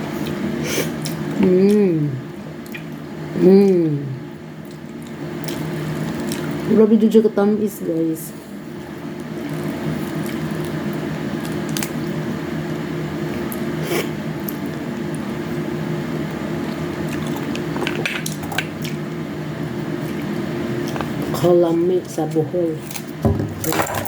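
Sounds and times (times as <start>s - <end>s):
steady low hum: 0.0s - 24.0s
chewing with mouth smacks: 2.6s - 3.0s, 4.6s - 6.6s, 16.7s - 19.0s.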